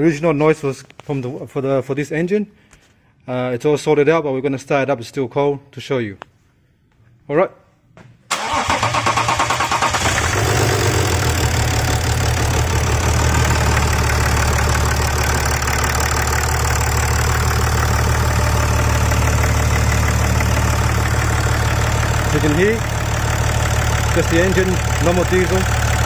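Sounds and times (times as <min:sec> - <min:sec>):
diesel engine idling: 0:08.4 - 0:26.0.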